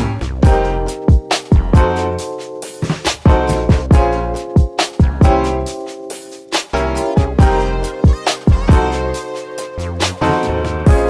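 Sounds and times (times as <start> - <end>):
upbeat funk instrumental: 0.0 - 11.0.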